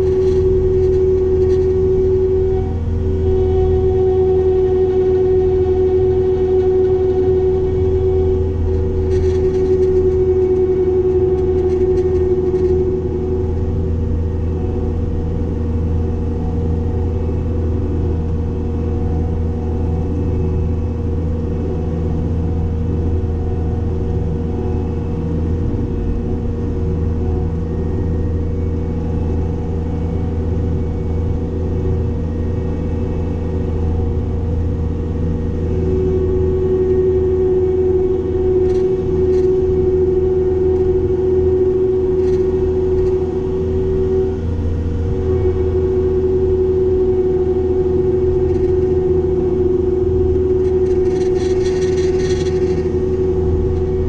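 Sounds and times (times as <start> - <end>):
diesel engine running under load: 0.0 - 54.0
steady whine: 0.0 - 54.0.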